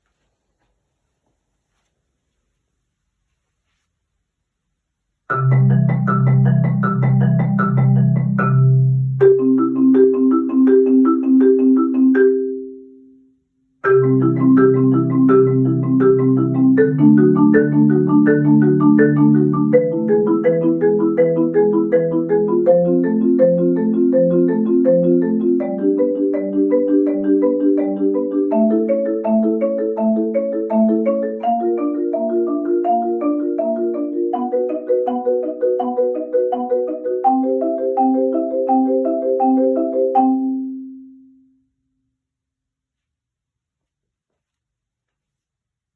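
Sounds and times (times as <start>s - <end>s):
marimba broken chords: 5.3s - 13.1s, 13.8s - 41.3s.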